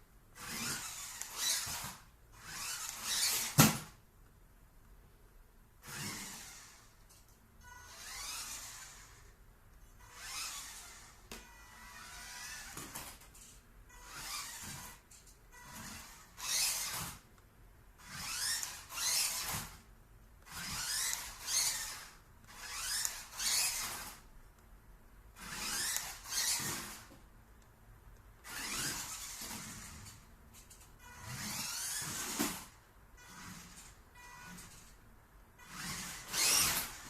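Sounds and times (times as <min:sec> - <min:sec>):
toy car motor whining: 0:00.4 - 0:03.6, 0:05.8 - 0:09.3, 0:10.0 - 0:13.1, 0:13.9 - 0:17.2, 0:18.0 - 0:19.8, 0:20.4 - 0:24.2, 0:25.4 - 0:27.1, 0:28.4 - 0:34.9, 0:35.6 - 0:37.0.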